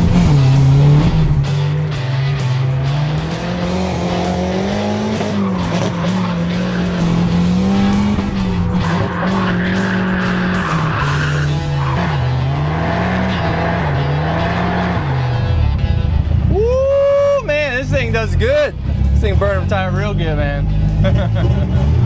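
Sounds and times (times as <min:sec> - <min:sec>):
car engine revving high: 0:00.0 - 0:16.5
tyre squeal: 0:08.8 - 0:12.2.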